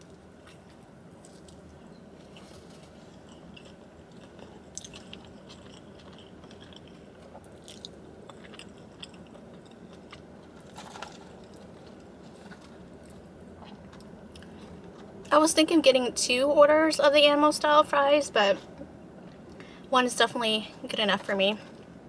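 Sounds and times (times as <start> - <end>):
chewing and biting fries: 0.0 - 15.3, 18.6 - 19.8.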